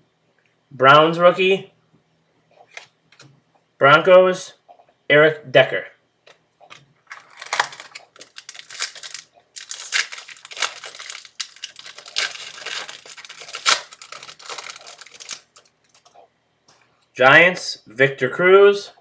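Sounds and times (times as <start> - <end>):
foil wrapper crinkling: 7.1 - 16.1.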